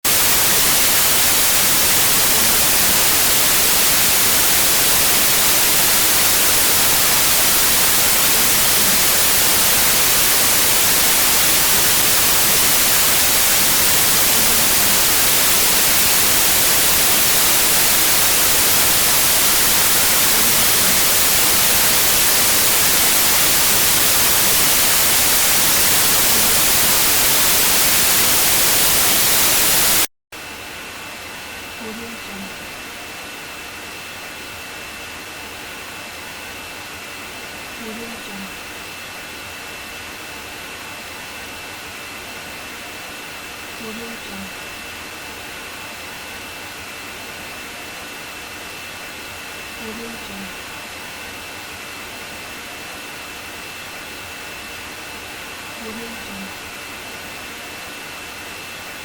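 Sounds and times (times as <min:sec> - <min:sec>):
static hiss: 0:00.0 - 0:59.0.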